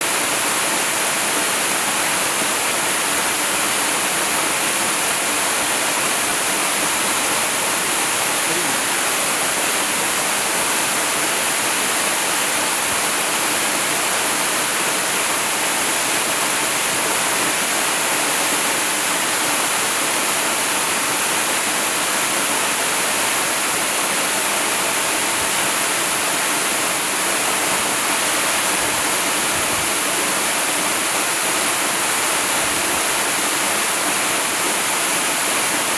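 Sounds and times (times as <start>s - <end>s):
waterfall rushing: 0.0s - 25.2s.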